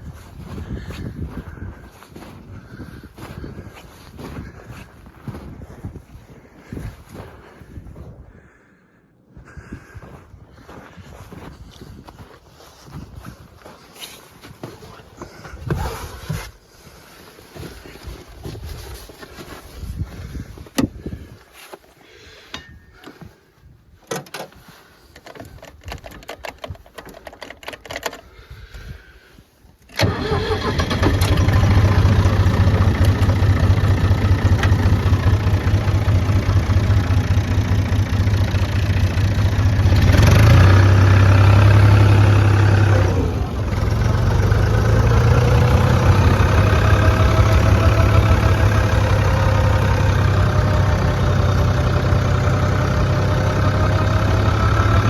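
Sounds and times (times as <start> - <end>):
tractor diesel engine running: 30.0 - 55.0.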